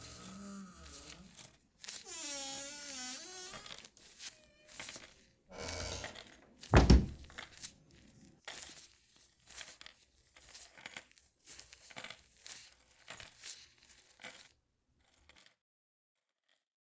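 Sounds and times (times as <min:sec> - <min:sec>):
latex gloves crinkling: 0:00.0 - 0:15.5
heavy thump: 0:06.8 - 0:07.3.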